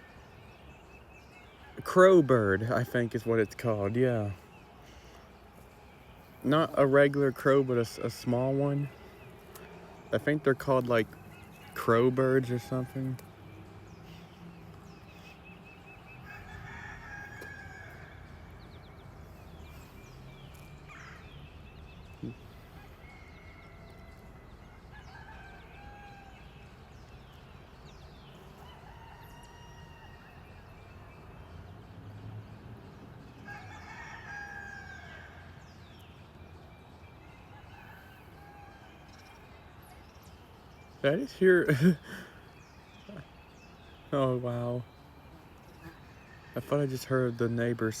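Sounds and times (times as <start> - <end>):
small birds chirping: 0.0 - 48.0
rooster crowing: 16.2 - 18.5, 22.6 - 26.6, 28.6 - 30.7, 33.4 - 35.5.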